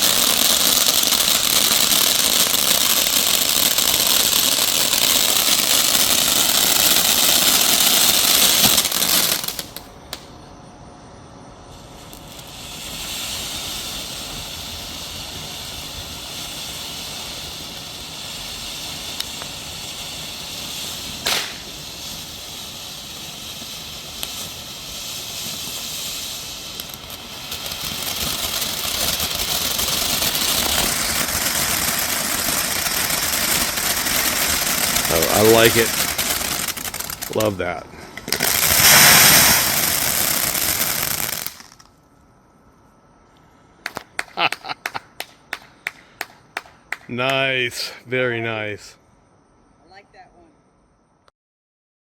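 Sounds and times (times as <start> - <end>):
firework fountain hissing and crackling: 0.0 - 10.6, 11.5 - 42.1, 43.2 - 50.6
sharp pops: 21.2 - 21.8, 26.7 - 41.9, 43.4 - 47.8.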